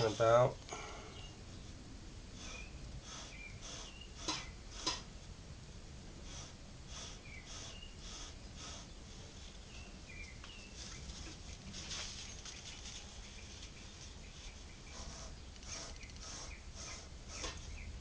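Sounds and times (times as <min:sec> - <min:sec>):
hand tool scraping wood: 0:00.0 - 0:00.5, 0:02.4 - 0:05.1, 0:14.9 - 0:17.9
small squeaks: 0:14.9 - 0:17.9.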